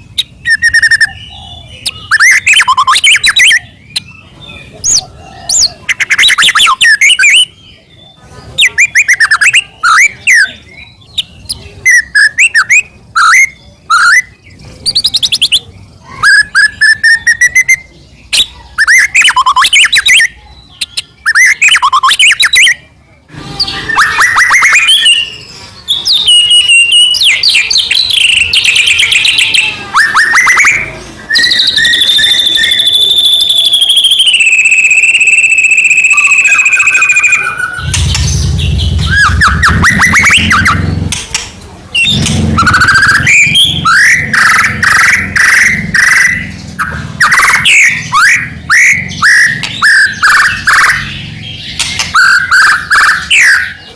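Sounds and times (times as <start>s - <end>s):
bird singing chirps and whistles: 0.0s - 22.9s, 23.6s - 41.0s, 41.9s - 53.9s.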